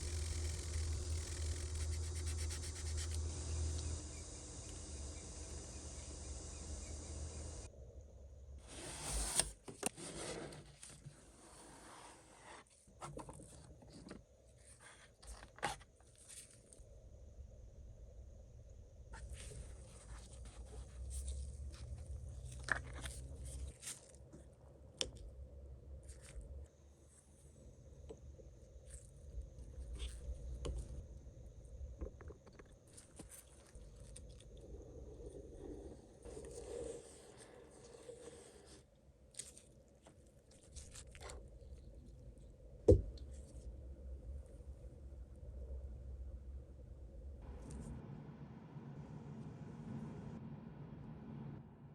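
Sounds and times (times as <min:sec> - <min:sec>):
low rumble: 0:44.2 - 0:51.9.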